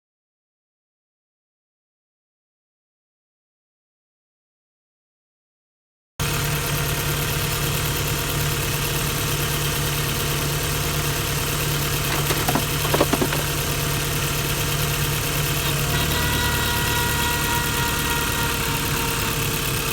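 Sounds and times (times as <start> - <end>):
car engine idling: 6.4 - 19.9
light engine knocks: 11.9 - 14.2.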